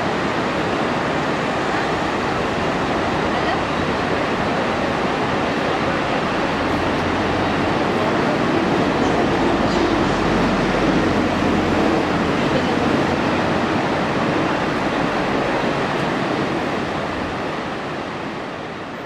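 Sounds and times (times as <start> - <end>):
train passing: 0.0 - 19.0.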